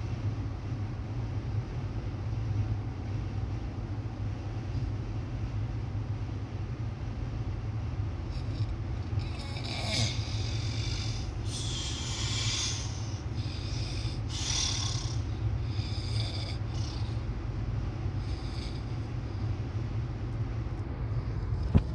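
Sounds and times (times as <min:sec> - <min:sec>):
vehicle low rumble: 0:00.0 - 0:21.9
person snoring: 0:08.4 - 0:17.2.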